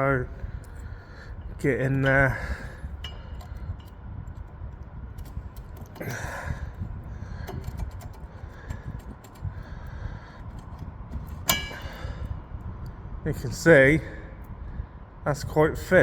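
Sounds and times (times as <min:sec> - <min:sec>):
metal brake parts clicking and rattling: 0:00.3 - 0:12.9
ringing metal clink: 0:01.9 - 0:04.0, 0:11.3 - 0:12.3.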